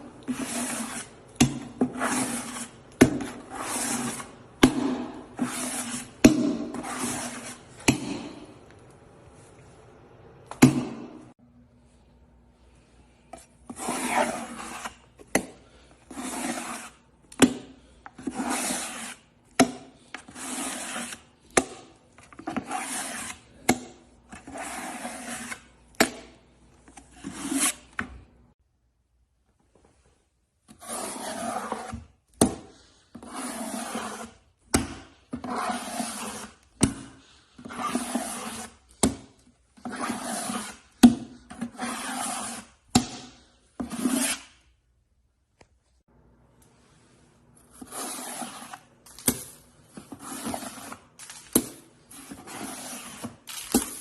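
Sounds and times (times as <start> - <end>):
rasping scraping strokes: 0.2 - 1.2, 1.8 - 8.4, 13.4 - 17.0, 18.2 - 19.3, 20.0 - 21.3, 22.4 - 23.6, 24.3 - 25.7, 27.0 - 27.9, 30.8 - 32.1, 32.7 - 34.4, 35.4 - 39.0, 39.8 - 44.6, 47.8 - 48.9.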